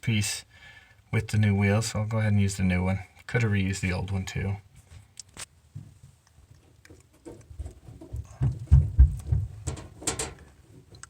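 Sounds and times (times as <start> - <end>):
low bumps of handling: 5.7 - 10.9.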